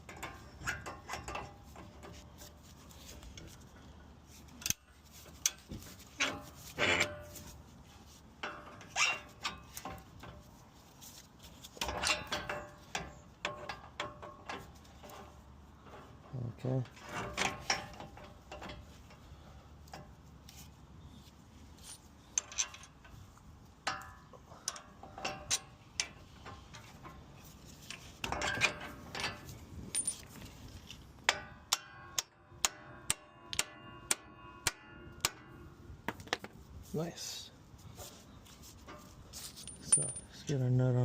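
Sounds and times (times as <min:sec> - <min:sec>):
metal tools clinking: 0:27.9 - 0:30.6, 0:38.8 - 0:40.7.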